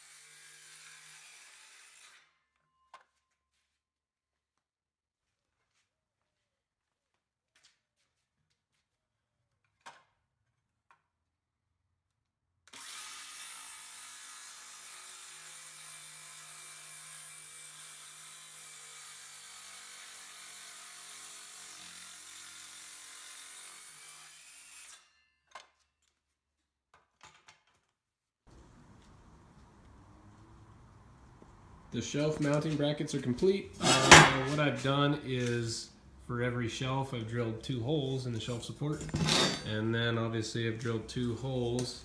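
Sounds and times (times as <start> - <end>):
power drill boring a hole: 12.7 - 24.0.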